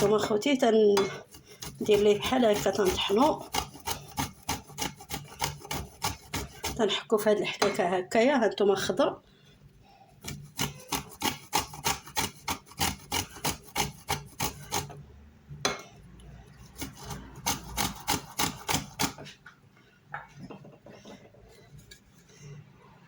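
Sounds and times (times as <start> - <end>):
ginger grated on hand grater: 0.0 - 7.0, 10.2 - 15.0, 16.6 - 19.2.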